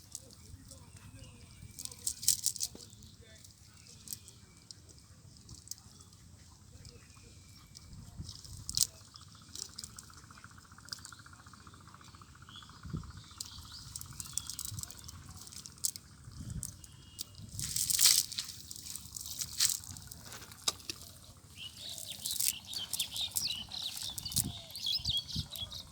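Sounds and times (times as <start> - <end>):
birds chirping: 0.0 - 25.9.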